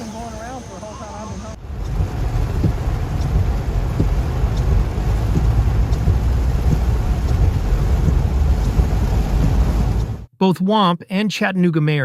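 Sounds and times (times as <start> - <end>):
floodwater rushing: 0.0 - 10.3
wind buffeting microphone: 1.5 - 10.3.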